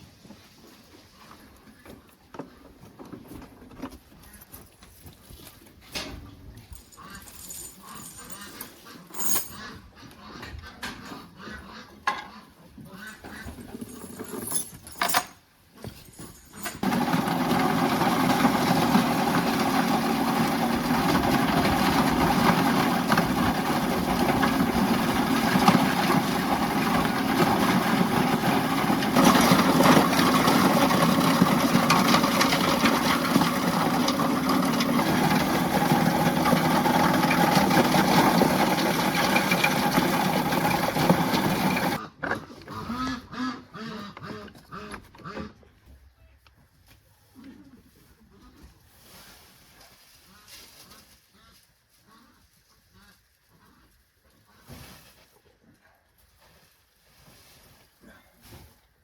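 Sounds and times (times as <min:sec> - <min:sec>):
machine motor humming: 0:16.8 - 0:42.0.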